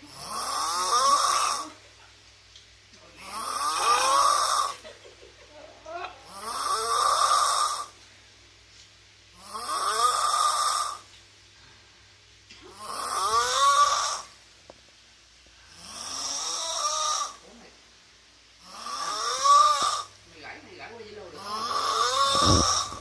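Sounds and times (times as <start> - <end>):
person snoring loudly: 0.1 - 1.8, 3.2 - 4.8, 6.2 - 8.0, 9.4 - 11.0, 12.7 - 14.3, 15.7 - 17.4, 18.6 - 20.1, 21.4 - 23.0.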